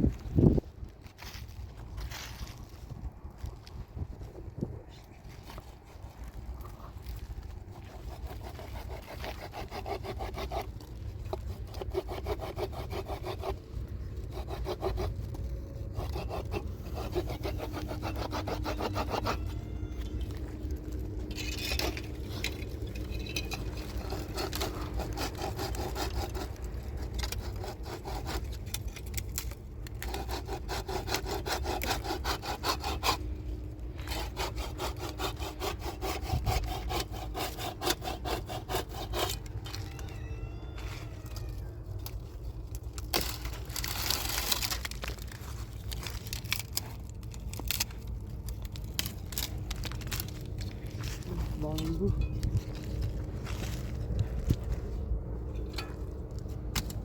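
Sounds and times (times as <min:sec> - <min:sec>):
hand saw cutting wood: 0:07.7 - 0:19.5, 0:21.6 - 0:33.3, 0:33.9 - 0:39.8.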